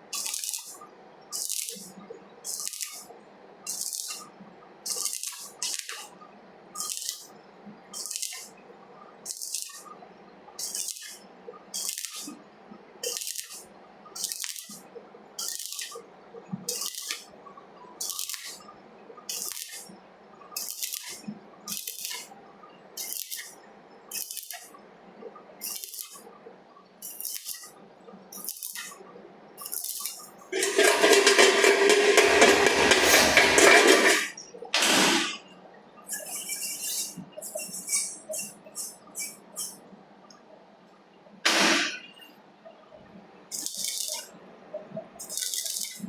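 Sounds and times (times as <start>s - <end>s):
welding arc crackle: 0.1s - 3.1s, 3.7s - 4.3s, 4.9s - 6.2s, 6.8s - 7.3s, 7.9s - 8.6s, 9.3s - 9.9s, 10.6s - 12.4s, 13.0s - 16.1s, 16.7s - 17.3s, 18.0s - 18.6s, 19.3s - 19.9s, 20.6s - 22.3s, 23.0s - 24.7s, 25.6s - 26.3s, 27.0s - 29.0s, 29.6s - 35.4s, 41.5s - 42.0s, 43.5s - 44.3s, 45.2s - 46.0s
wire brush scrubbing metal: 30.6s - 34.3s.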